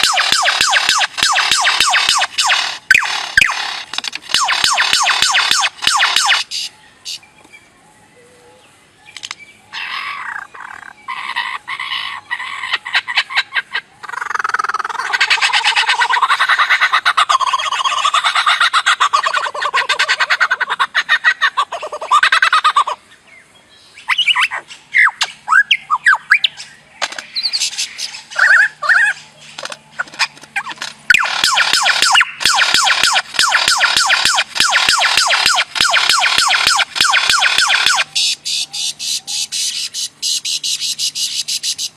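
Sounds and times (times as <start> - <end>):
bird harsh pulsed squawking: 0.0 - 7.2, 9.7 - 23.1, 27.4 - 29.3, 31.1 - 41.9.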